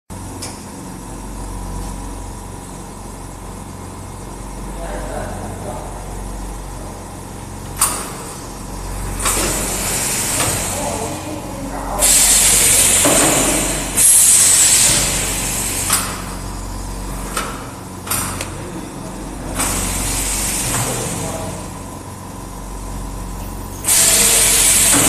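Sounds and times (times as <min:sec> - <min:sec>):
steady low hum: 0:00.1 - 0:25.0
compressed air hissing: 0:07.8 - 0:17.4, 0:19.6 - 0:21.8, 0:23.8 - 0:25.0.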